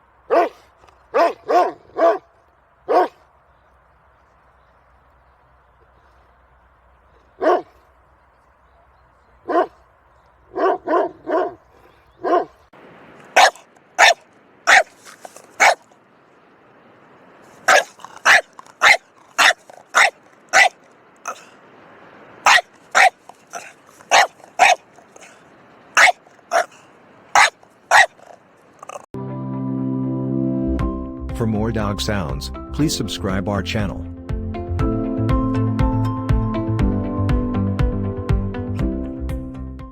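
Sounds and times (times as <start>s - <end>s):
large dog barking: 0.3s - 2.3s, 2.9s - 3.2s, 7.3s - 7.8s, 9.4s - 9.9s, 10.5s - 12.6s, 13.4s - 15.9s, 17.6s - 21.5s, 22.4s - 25.4s, 26.0s - 29.1s.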